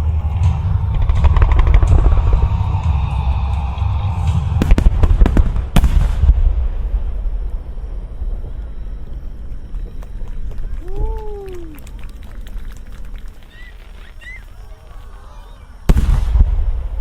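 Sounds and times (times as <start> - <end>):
fireworks bursting and crackling: 0.0 - 7.7, 8.4 - 17.0
low rumble: 0.0 - 13.9, 14.7 - 17.0
loud sharp bangs: 0.3 - 7.6, 15.8 - 17.0.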